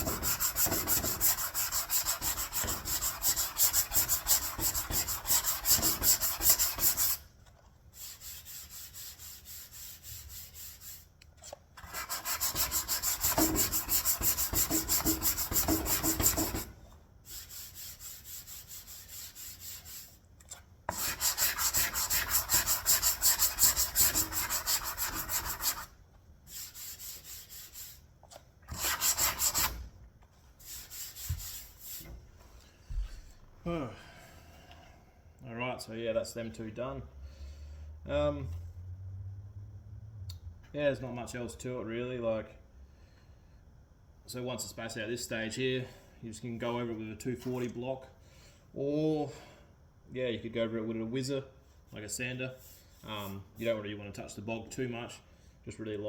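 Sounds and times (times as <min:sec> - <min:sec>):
sanding car panel rasping: 0:00.0 - 0:07.2, 0:11.8 - 0:16.7, 0:17.3 - 0:20.1, 0:20.9 - 0:25.9, 0:28.7 - 0:29.8.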